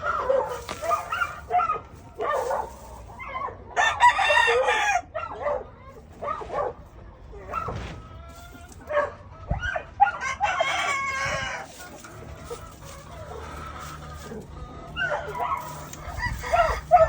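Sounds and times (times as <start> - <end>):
rooster clucking: 0.0 - 17.0
rooster crowing: 3.8 - 5.1, 10.1 - 11.8, 12.5 - 17.0.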